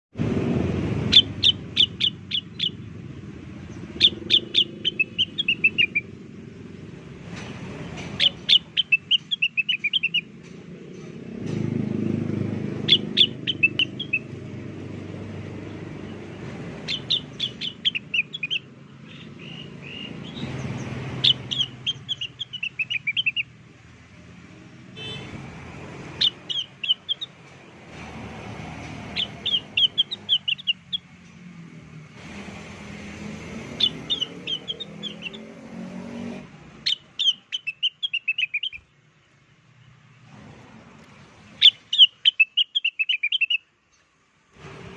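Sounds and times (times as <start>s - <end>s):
bird song: 1.0s - 6.7s, 7.4s - 11.2s, 11.9s - 14.9s, 15.5s - 23.6s, 26.1s - 27.8s, 28.8s - 31.8s, 33.4s - 35.7s, 36.8s - 40.3s, 41.0s - 44.2s.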